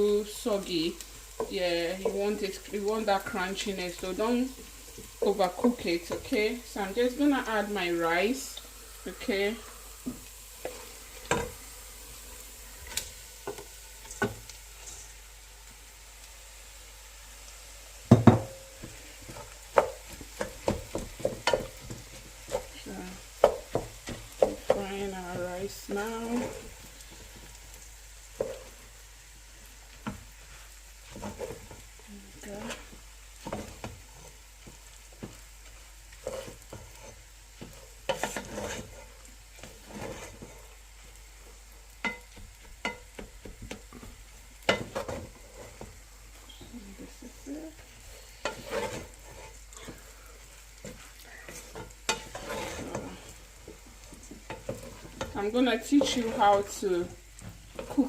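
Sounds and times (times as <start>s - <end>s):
low sizzle: 0.0s - 58.0s
utensil scraping and knocking pan: 18.1s - 22.8s, 23.4s - 25.5s, 36.2s - 40.6s, 42.0s - 46.6s, 48.4s - 50.0s, 50.8s - 56.8s.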